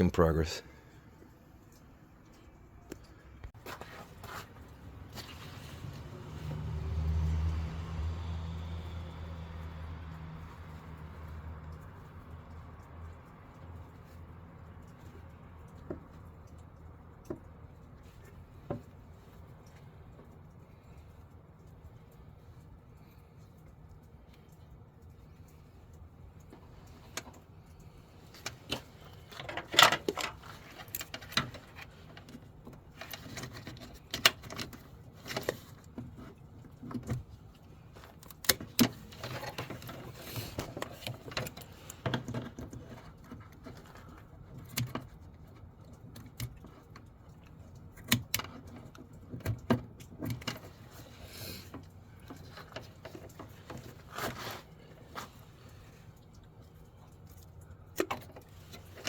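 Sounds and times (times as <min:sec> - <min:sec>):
tools and small parts clinking: 0:22.9 - 0:59.0.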